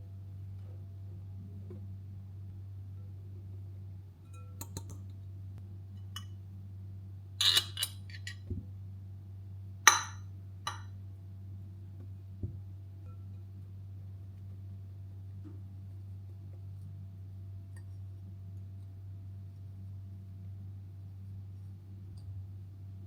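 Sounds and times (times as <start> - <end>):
steady low hum: 0.0 - 23.0
dishes and utensils clinking: 7.4 - 8.5, 9.9 - 10.9.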